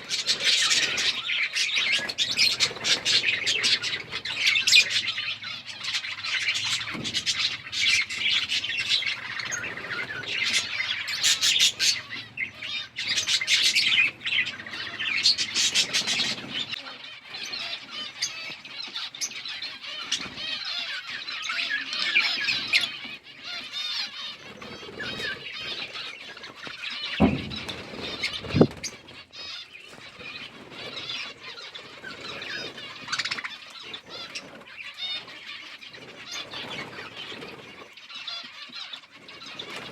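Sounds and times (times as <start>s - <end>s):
budgies chirping and chattering: 0.0s - 39.9s
low thumps: 27.2s - 28.9s.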